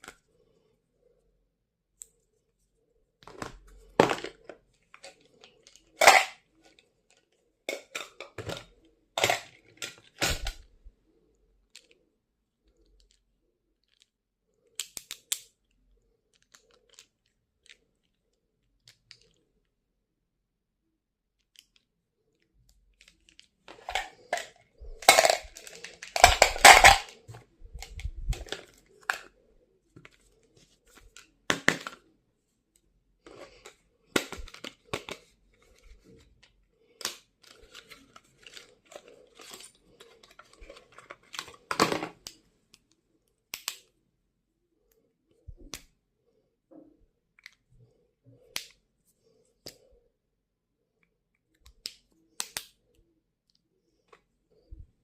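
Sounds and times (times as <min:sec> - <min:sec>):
packaging rustling: 0:03.2 - 0:06.8, 0:23.7 - 0:29.3, 0:37.0 - 0:42.2.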